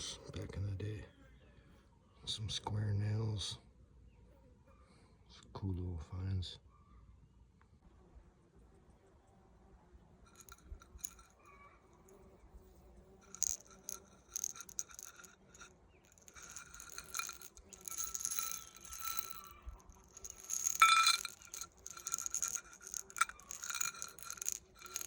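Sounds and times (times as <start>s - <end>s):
metal nails rattling: 10.3s - 11.4s, 13.2s - 25.0s.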